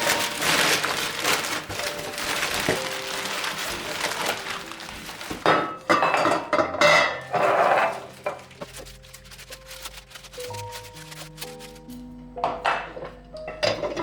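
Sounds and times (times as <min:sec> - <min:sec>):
dishes clattering and clinking: 0:05.3 - 0:08.5, 0:12.4 - 0:14.0.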